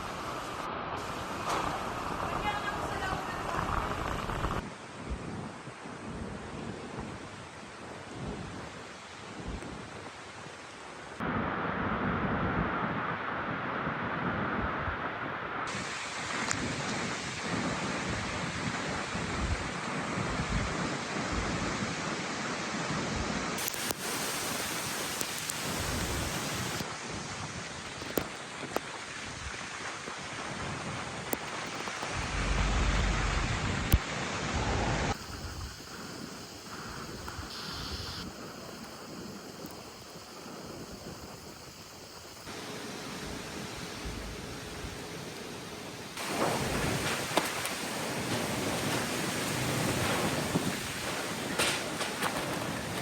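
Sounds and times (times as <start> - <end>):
rain rushing: 0.0 - 4.7, 23.6 - 26.9, 27.9 - 53.0
strong wind: 0.0 - 10.4, 11.2 - 53.0
wind buffeting microphone: 30.4 - 42.5.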